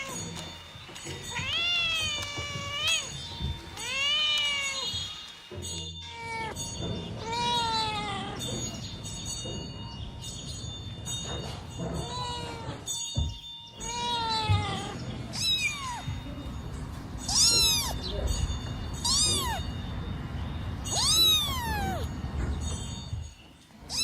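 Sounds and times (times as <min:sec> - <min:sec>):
cat meowing: 0:01.1 - 0:05.0, 0:06.1 - 0:06.6, 0:07.2 - 0:08.8, 0:12.0 - 0:12.9, 0:13.8 - 0:16.6, 0:17.2 - 0:18.4, 0:19.0 - 0:19.9, 0:20.8 - 0:22.2.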